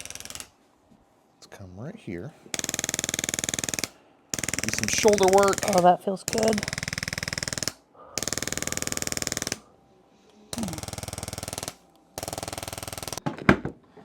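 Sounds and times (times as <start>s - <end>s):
percussion massager hammering: 0.0s - 0.6s, 2.5s - 9.6s, 10.6s - 13.6s.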